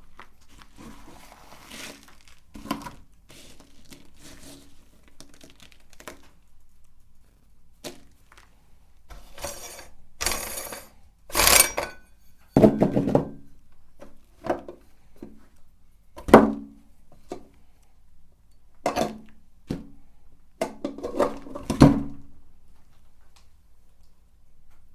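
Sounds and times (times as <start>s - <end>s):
hard objects knocking and clunking: 9.4s - 12.0s.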